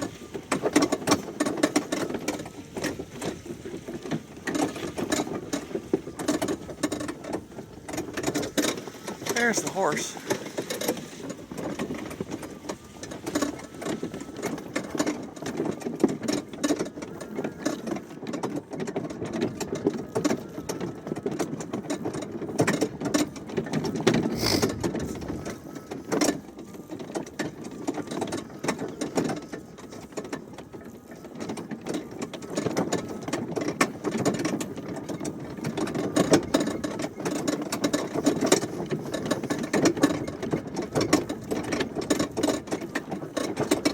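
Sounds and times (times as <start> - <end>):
electric mower motor whir: 0.0 - 17.6
wagon rattles and knocks: 0.0 - 43.9.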